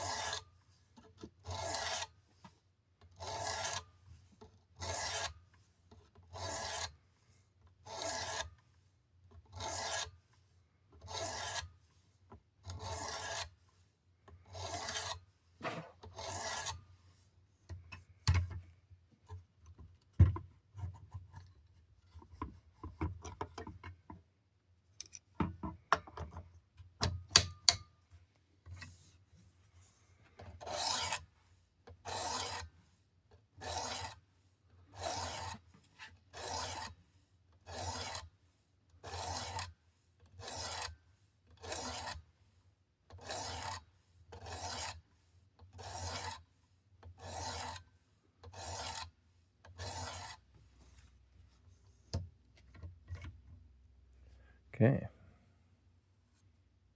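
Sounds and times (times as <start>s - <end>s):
sharpening stone rasping on knife: 0.0s - 0.4s, 4.8s - 5.3s, 6.4s - 6.9s, 7.9s - 8.5s, 9.6s - 10.1s, 11.1s - 11.7s, 12.8s - 13.5s, 14.5s - 15.2s, 16.2s - 16.8s, 30.6s - 31.3s, 32.1s - 32.7s, 33.6s - 34.2s, 35.0s - 35.6s, 36.4s - 37.0s, 37.7s - 38.3s, 39.0s - 39.7s, 40.4s - 40.9s, 41.6s - 42.2s, 43.2s - 43.8s, 44.4s - 45.0s, 45.8s - 46.5s, 47.2s - 47.9s, 48.5s - 49.1s, 49.7s - 50.4s.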